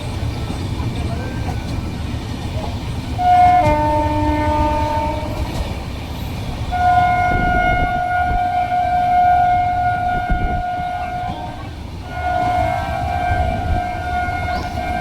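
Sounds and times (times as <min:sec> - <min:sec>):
moving train rumble: 0:00.0 - 0:15.0
electric locomotive horn: 0:03.2 - 0:05.6, 0:06.7 - 0:15.0.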